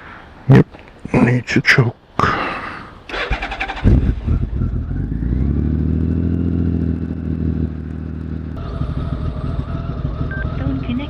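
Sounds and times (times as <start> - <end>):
motorcycle engine fast idle: 8.6 - 11.0.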